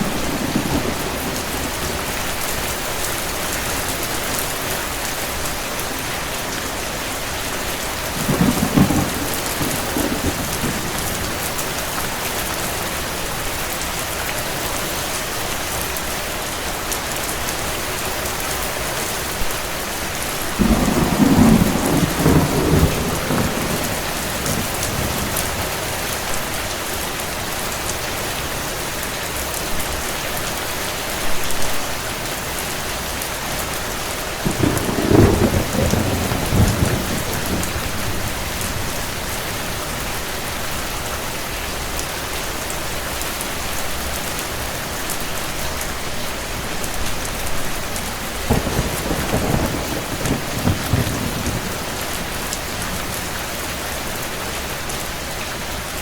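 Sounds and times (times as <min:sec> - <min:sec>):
thunder rolling: 0:00.0 - 0:04.7, 0:08.0 - 0:12.5, 0:20.6 - 0:26.6, 0:34.2 - 0:40.6, 0:47.6 - 0:54.3
steady rain: 0:00.0 - 0:56.0.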